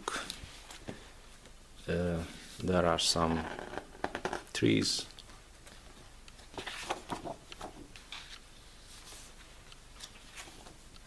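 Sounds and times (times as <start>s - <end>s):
book pages rustling: 5.2s - 11.0s.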